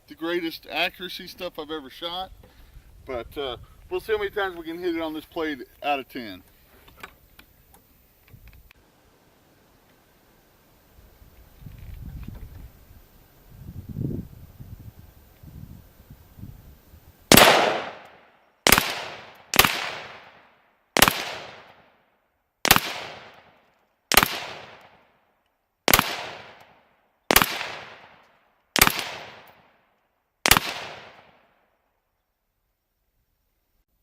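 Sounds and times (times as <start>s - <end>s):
rifle shots: 17.3s - 21.9s, 22.6s - 25.0s, 25.9s - 28.2s, 28.8s - 29.8s, 30.4s - 31.4s.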